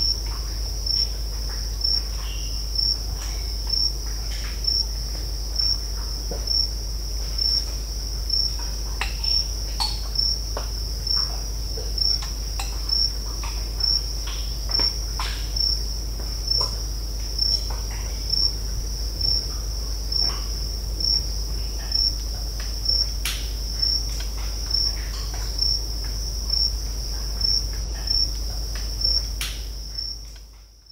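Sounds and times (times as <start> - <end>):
crickets trilling: 0.0 - 30.9
crackling and popping clicks: 27.5 - 30.5.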